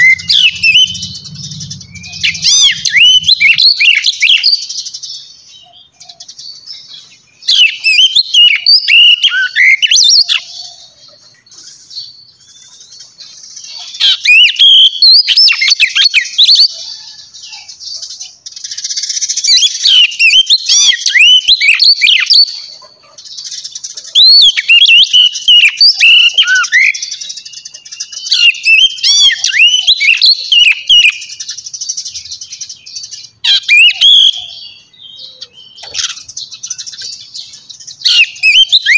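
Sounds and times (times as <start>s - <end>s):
high twittering: 0.0s - 4.8s
songbird singing: 0.0s - 38.9s.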